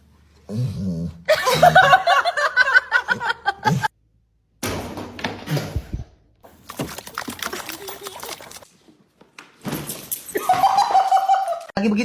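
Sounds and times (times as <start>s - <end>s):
high-pitched laughter: 1.3s - 3.9s, 10.4s - 11.7s.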